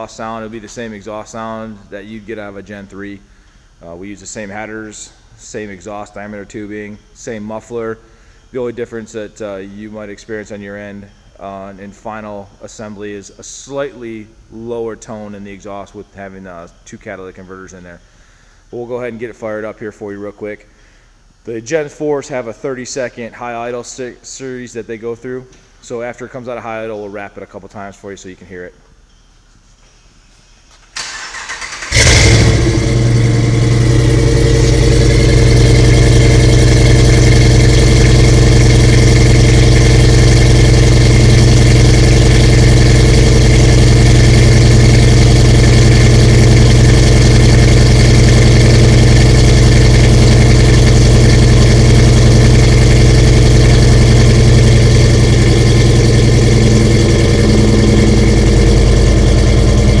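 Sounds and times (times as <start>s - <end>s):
engine cranking: 31.0s - 60.0s
engine loud high idle: 31.4s - 60.0s.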